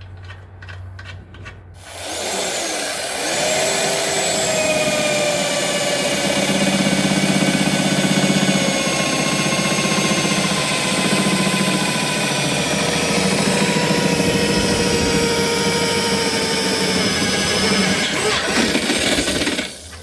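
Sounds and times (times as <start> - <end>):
power drill boring into steel: 1.8 - 20.0.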